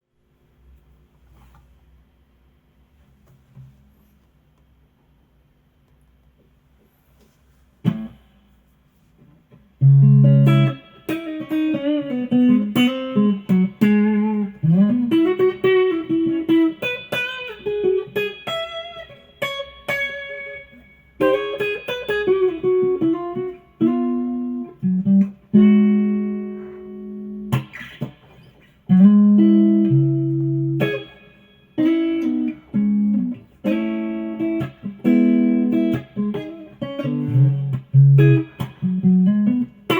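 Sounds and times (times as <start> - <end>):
electric guitar lead line: 9.8 - 39.9.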